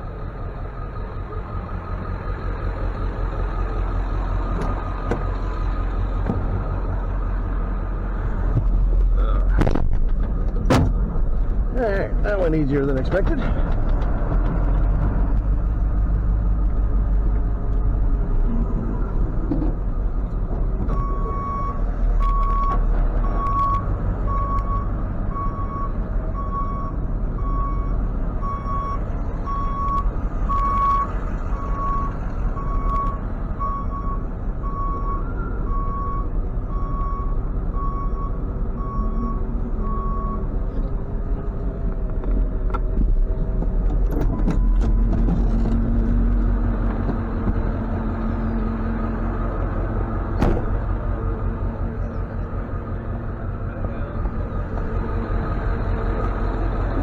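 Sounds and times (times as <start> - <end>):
truck engine idling: 0.0 - 44.0, 44.6 - 57.0
reversing alarm beeping: 21.0 - 40.4.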